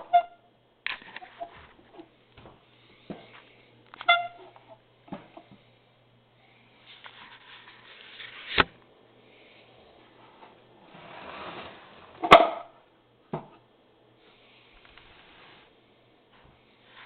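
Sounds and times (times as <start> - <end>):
rustling and sliding: 6.8 - 8.8, 9.9 - 12.3, 14.2 - 17.0.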